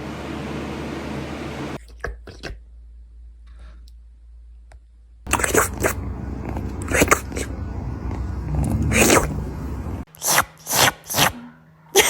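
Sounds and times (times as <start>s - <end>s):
wet licking: 5.3s - 11.3s.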